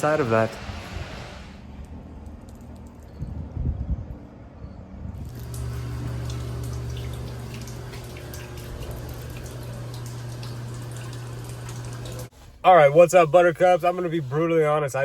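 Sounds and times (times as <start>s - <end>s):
low machine hum: 5.0s - 12.3s.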